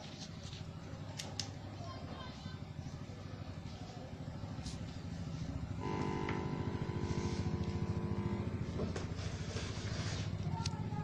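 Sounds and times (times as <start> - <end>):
steady low buzz: 2.8 - 11.0
held musical tone: 5.6 - 9.2.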